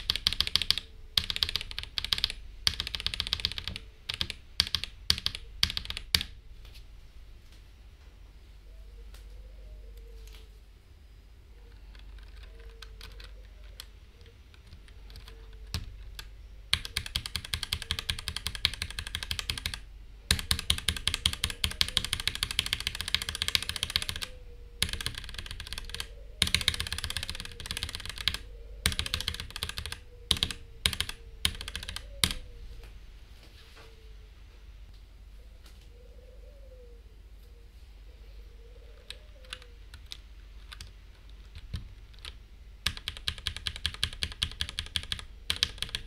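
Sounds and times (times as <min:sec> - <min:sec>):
mechanical keyboard typing: 0:00.0 - 0:06.4, 0:11.9 - 0:32.4, 0:39.0 - 0:46.0.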